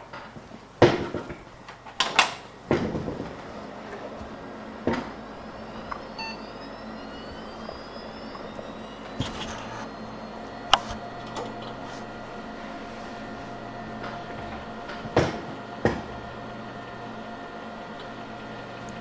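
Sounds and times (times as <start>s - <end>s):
low electrical hum: 0.0s - 19.0s
faint rising whistle-like tones: 3.6s - 19.0s.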